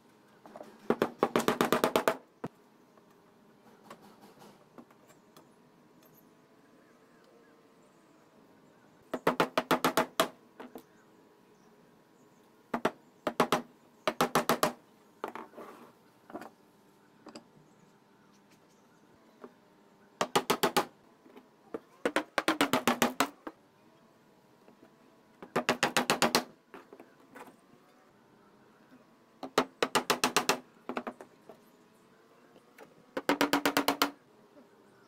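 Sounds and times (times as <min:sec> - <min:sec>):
hammer driving nails into wood: 0:00.8 - 0:02.2, 0:09.1 - 0:10.7, 0:12.8 - 0:14.8, 0:20.2 - 0:20.9, 0:22.0 - 0:23.4, 0:25.4 - 0:26.5, 0:29.4 - 0:31.1, 0:33.2 - 0:34.2.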